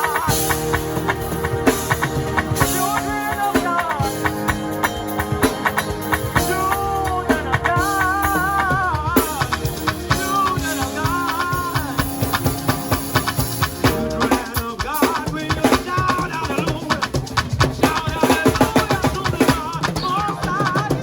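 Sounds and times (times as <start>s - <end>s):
drum kit beat: 0.0s - 21.0s
live band playing: 0.0s - 21.0s
person singing long notes: 6.0s - 12.9s.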